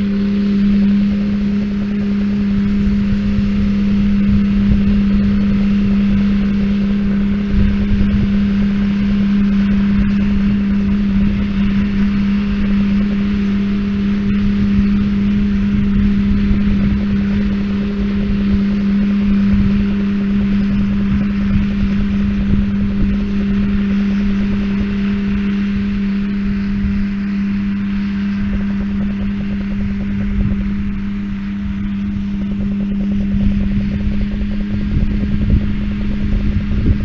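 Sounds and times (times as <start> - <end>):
tractor and baler humming: 0.0 - 37.0.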